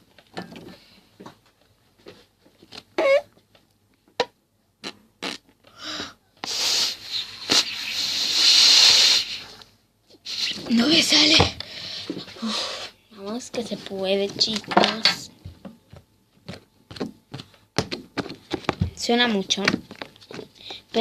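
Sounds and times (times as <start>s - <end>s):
air hissing out of putty: 6.4s - 9.6s.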